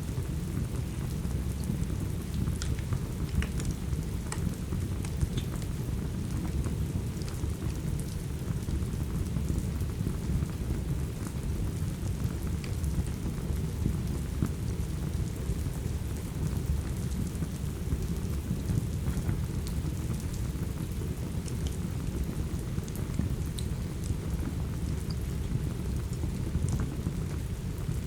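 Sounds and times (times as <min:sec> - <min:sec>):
steady rain: 0:00.0 - 0:28.0
wood fire crackling: 0:00.1 - 0:09.1, 0:14.0 - 0:28.0.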